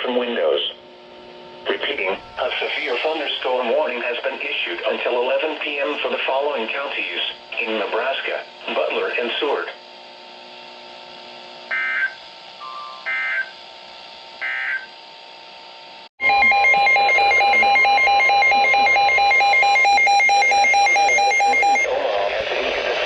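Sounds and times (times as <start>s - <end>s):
pulsing electronic alert tone: 11.7s - 13.6s, 16.2s - 21.9s
digital data bursts: 16.2s - 22.7s.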